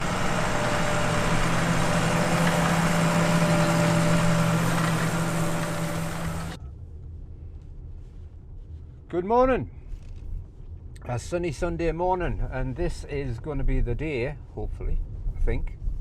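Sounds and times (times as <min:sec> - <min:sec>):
engine humming: 0:00.0 - 0:08.2
faint low rumble: 0:05.5 - 0:16.0.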